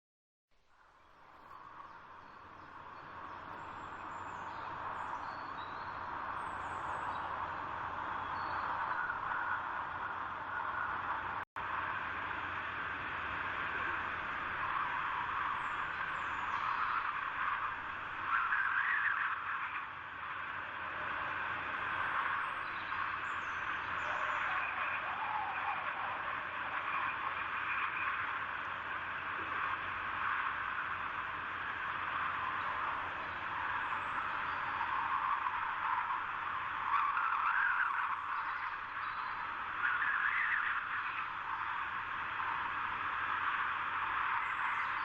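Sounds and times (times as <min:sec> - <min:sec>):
faint high bird chirps: 0:00.9 - 0:09.3, 0:22.0 - 0:26.2, 0:36.8 - 0:41.9, 0:44.3 - 0:45.0.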